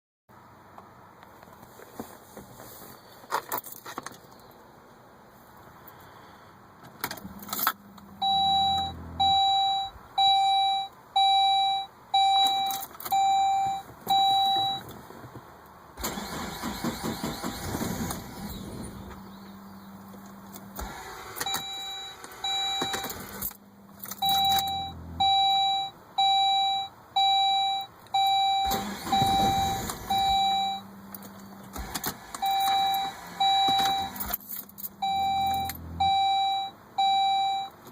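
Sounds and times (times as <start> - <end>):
car engine cranking and starting: 6.8 - 37.9
car warning chime beeps: 7.4 - 14.9, 18.3 - 37.8.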